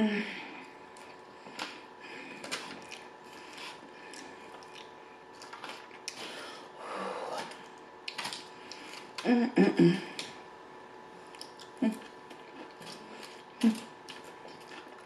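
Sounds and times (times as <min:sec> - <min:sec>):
chewing food: 0:02.4 - 0:06.2, 0:11.2 - 0:15.0
food crunching: 0:02.4 - 0:06.2, 0:07.5 - 0:09.2, 0:11.2 - 0:15.0
crisp clicks and crackles: 0:07.4 - 0:09.3.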